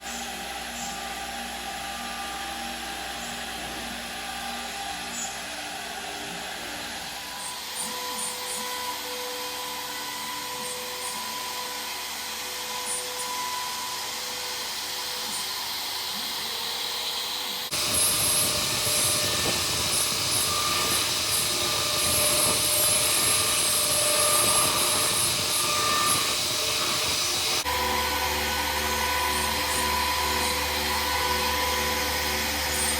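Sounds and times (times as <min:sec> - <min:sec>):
rough cutting noise: 0:00.0 - 0:32.9
router spindle whining: 0:00.0 - 0:32.9.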